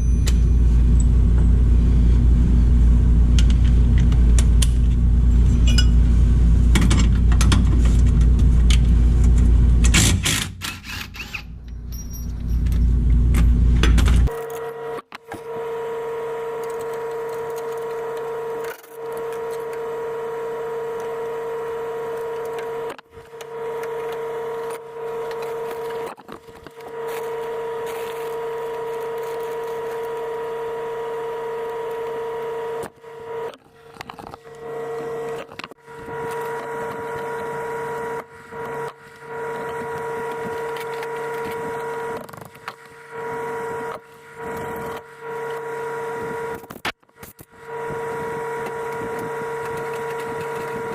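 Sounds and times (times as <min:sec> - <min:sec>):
power tool motor whining: 0:10.3 - 0:11.6, 0:14.2 - 0:50.9.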